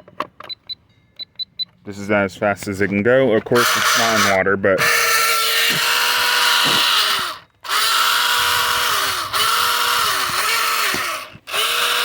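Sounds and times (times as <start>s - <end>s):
electric motor high whine: 3.6s - 12.0s.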